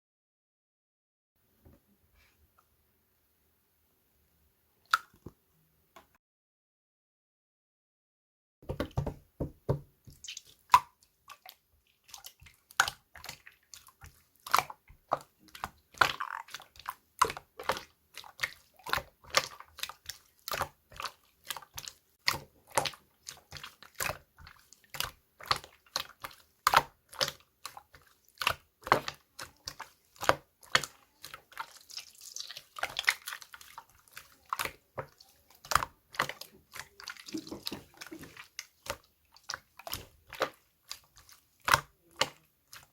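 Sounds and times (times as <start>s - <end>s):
slime squishing wet clicks: 4.9s - 5.3s, 10.1s - 42.9s.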